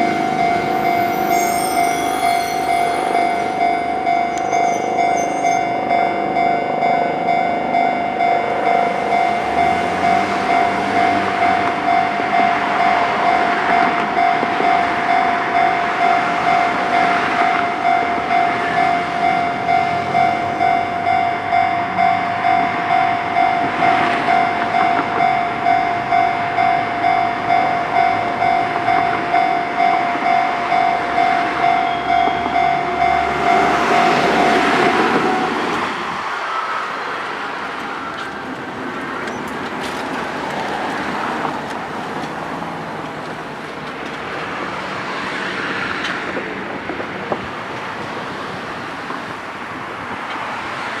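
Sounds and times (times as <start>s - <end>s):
level crossing bell clanging: 0.0s - 36.2s
diesel railcar passing: 0.0s - 51.0s.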